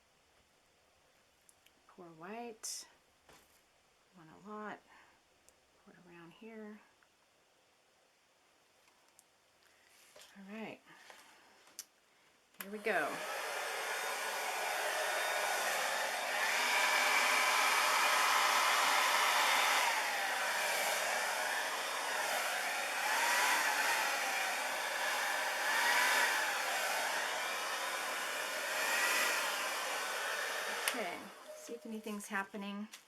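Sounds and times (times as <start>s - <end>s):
hair dryer running: 12.6s - 32.5s.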